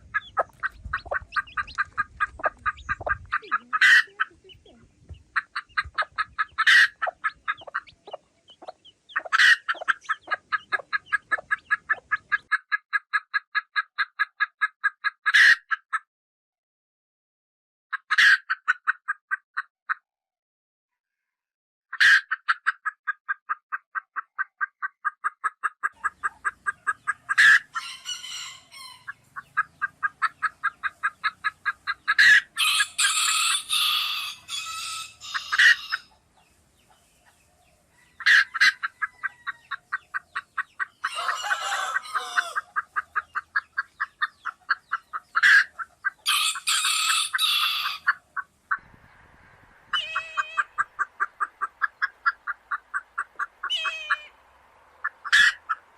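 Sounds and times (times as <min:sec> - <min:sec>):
baby chicks peeping: 0:00.0 - 0:12.6, 0:26.0 - 0:48.9
chicken calls: 0:00.0 - 0:12.7, 0:25.8 - 0:55.9.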